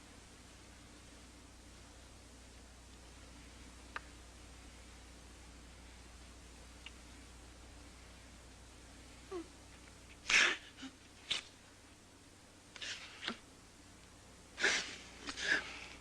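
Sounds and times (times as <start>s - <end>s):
woman whimpering: 9.3s - 9.5s.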